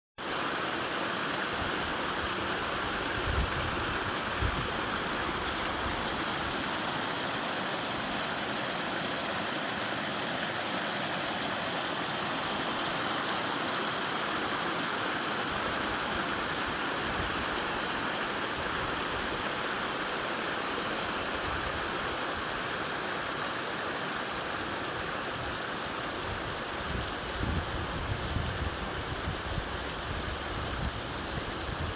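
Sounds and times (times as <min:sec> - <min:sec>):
stream and waterfall rushing: 0:00.2 - 0:31.9.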